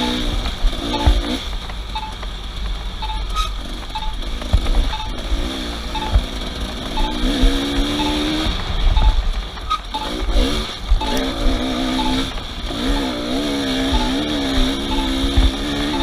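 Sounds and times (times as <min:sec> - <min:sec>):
vehicle engine revving: 0:00.0 - 0:16.0
short high beeps: 0:02.0 - 0:02.2, 0:03.0 - 0:04.2, 0:04.9 - 0:05.2, 0:05.9 - 0:06.2, 0:07.0 - 0:08.4, 0:09.0 - 0:10.2, 0:11.0 - 0:12.3, 0:13.9 - 0:16.0.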